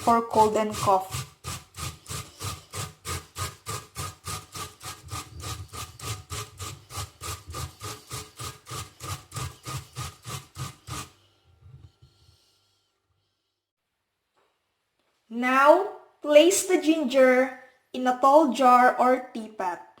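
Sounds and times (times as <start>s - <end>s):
ginger scraping on a grater: 0.0s - 12.6s.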